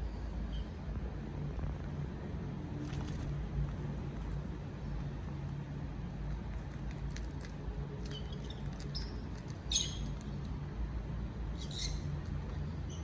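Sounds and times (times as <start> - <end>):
bird chicks high squeaks: 8.3 - 10.2.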